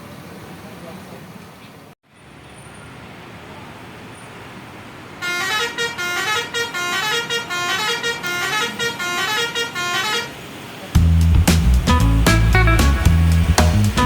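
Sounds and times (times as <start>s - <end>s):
low traffic hum: 0.0s - 14.0s
multi-tone musical bus horn: 5.2s - 10.6s.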